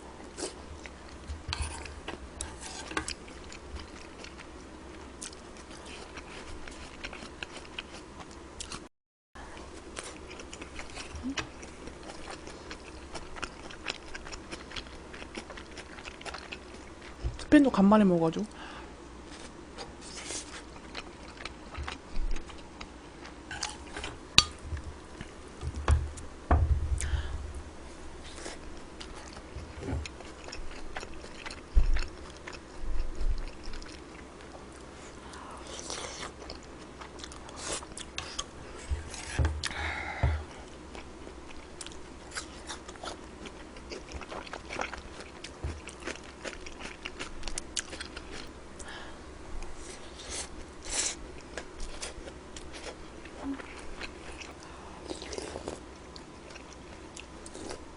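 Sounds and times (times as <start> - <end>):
chewing and biting food: 0.2 - 8.9, 9.6 - 17.5, 19.3 - 25.4, 28.2 - 39.8, 40.4 - 48.5, 49.6 - 57.9
dull thumps: 25.6 - 27.4.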